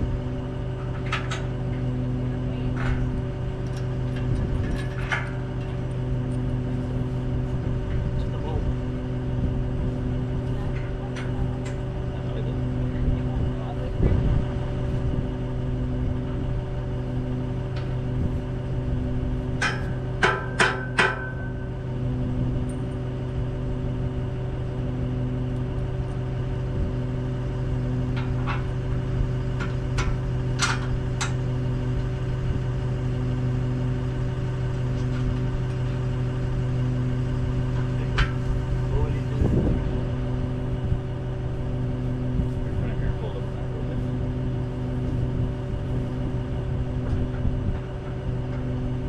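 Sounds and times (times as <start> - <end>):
engine idling: 0.0 - 49.0
hammer striking steel: 19.6 - 21.7.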